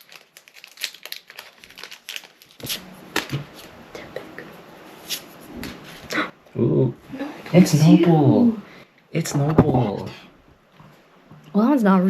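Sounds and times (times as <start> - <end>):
foil wrapper tearing and crinkling: 0.0 - 3.7.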